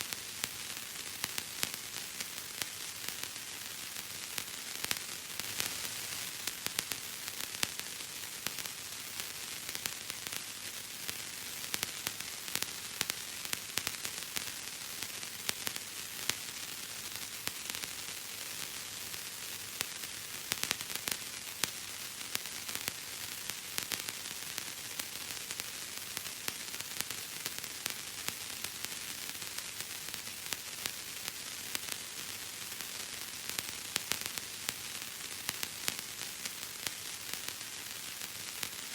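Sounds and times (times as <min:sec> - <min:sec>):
steady hiss: 0:00.0 - 0:38.9.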